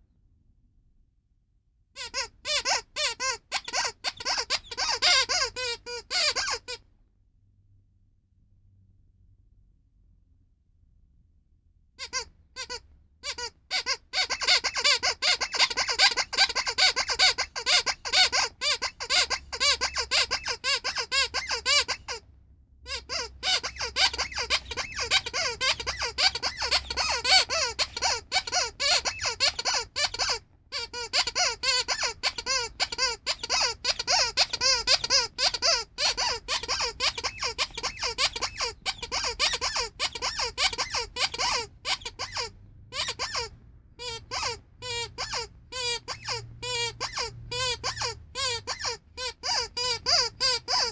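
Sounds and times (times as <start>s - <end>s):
rubber squeaky toy squeaking: 2.0s - 6.8s, 12.0s - 50.9s.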